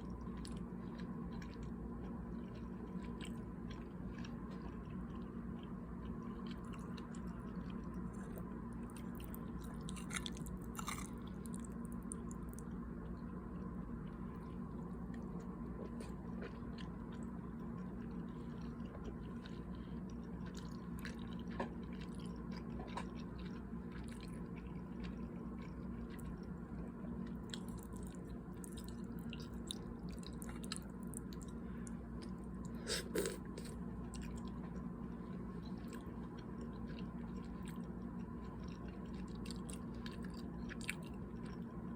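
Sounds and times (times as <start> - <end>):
person chewing food: 0.0 - 41.9
steady low hum: 0.0 - 41.9.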